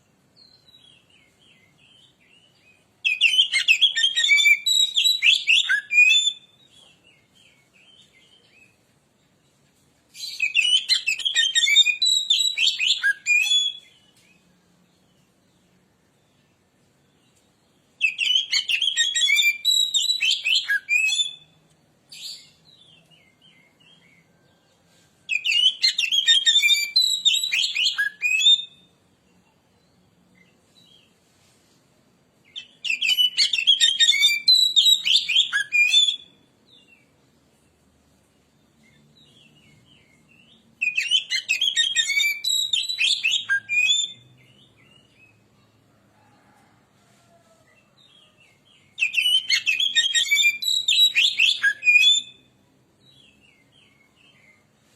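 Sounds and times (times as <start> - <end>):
bird singing chirps and whistles: 3.0 - 6.7, 10.2 - 14.0, 18.0 - 22.6, 25.3 - 28.9, 32.5 - 37.0, 38.9 - 45.3, 49.0 - 52.5.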